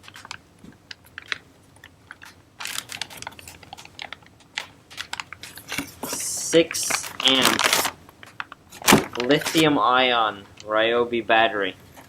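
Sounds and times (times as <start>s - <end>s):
small clicks and rustles: 0.0s - 6.2s
plastic bag crinkling: 0.0s - 10.8s.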